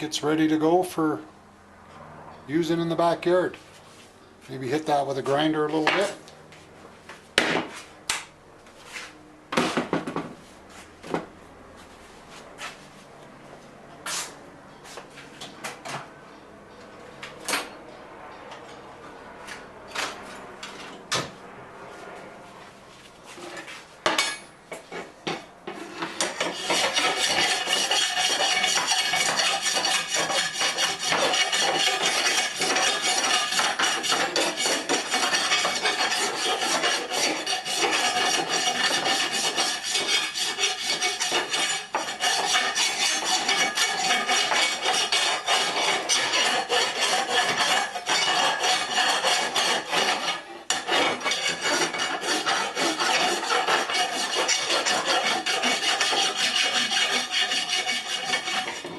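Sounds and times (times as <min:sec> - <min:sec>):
grinder abrading metal: 0:25.8 - 0:58.9.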